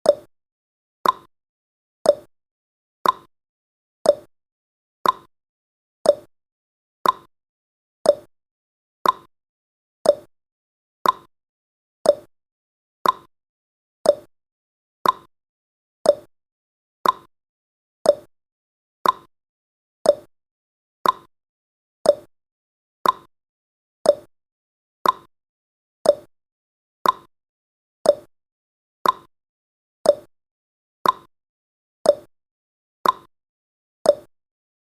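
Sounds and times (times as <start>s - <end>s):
timer ticking: 0.0s - 0.3s, 1.0s - 1.3s, 2.0s - 2.3s, 3.0s - 3.3s, 4.0s - 4.3s, 5.0s - 5.3s, 6.0s - 6.3s, 7.0s - 7.3s, 8.0s - 8.3s, 9.0s - 9.3s, 10.0s - 10.3s, 11.0s - 11.3s, 12.0s - 12.3s, 13.0s - 13.3s, 14.0s - 14.3s, 15.0s - 15.3s, 16.0s - 16.3s, 17.0s - 17.3s, 18.0s - 18.3s, 19.0s - 19.3s, 20.0s - 20.3s, 21.0s - 21.3s, 22.0s - 22.3s, 23.0s - 23.3s, 24.0s - 24.3s, 25.0s - 25.3s, 26.0s - 26.3s, 27.0s - 27.3s, 28.0s - 28.3s, 29.0s - 29.3s, 30.0s - 30.3s, 31.0s - 31.3s, 32.0s - 32.3s, 33.0s - 33.3s, 34.1s - 34.3s.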